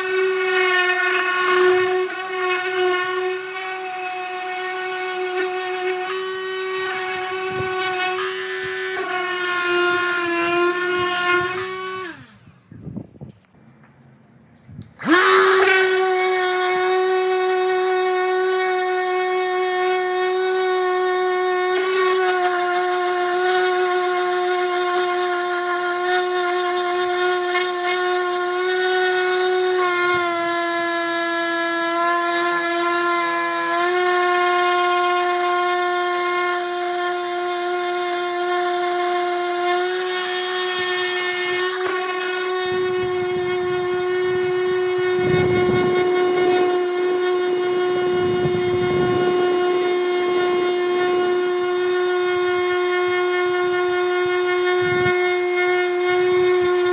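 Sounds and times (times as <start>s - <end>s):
power sander motor whine: 0.0s - 13.6s, 14.8s - 56.9s
rough sanding rumble: 39.8s - 56.9s.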